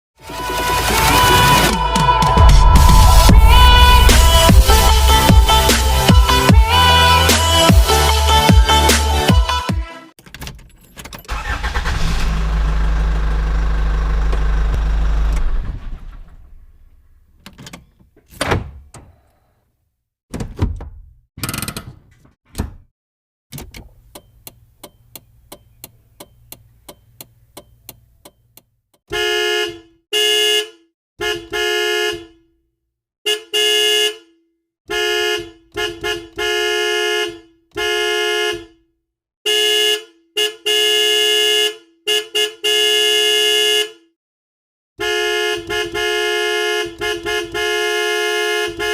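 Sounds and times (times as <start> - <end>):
car engine running: 11.3 - 17.3
car horn honking: 11.4 - 12.2, 29.1 - 32.6, 33.2 - 38.9, 39.5 - 44.2, 45.0 - 48.9
turn signal ticking: 23.8 - 29.0.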